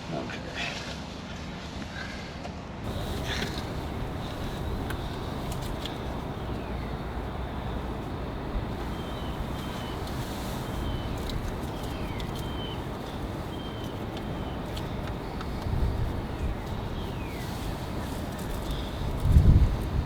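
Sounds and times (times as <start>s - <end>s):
low outdoor rumble: 2.8s - 20.0s
faint high chirps: 2.9s - 20.0s
light clicks: 2.9s - 20.0s.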